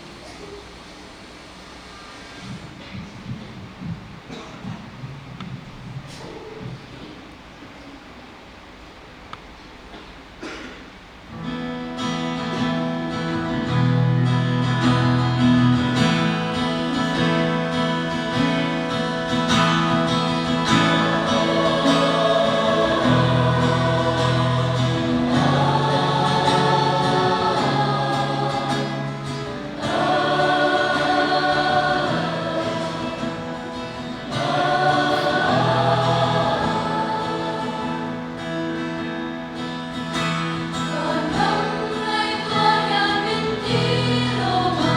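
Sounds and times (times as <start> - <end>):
guitar accompaniment: 11.3 - 44.9
choir singing a hymn: 13.1 - 44.9.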